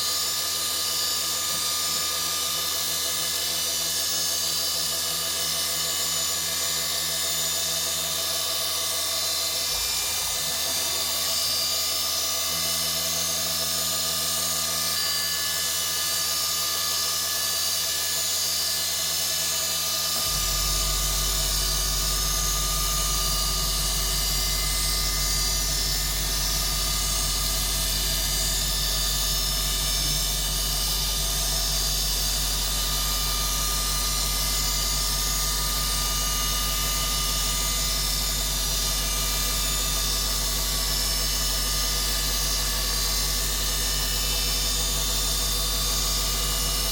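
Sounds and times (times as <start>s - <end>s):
milling machine spindle whine: 0.0s - 46.9s
strong low hum: 20.1s - 39.6s.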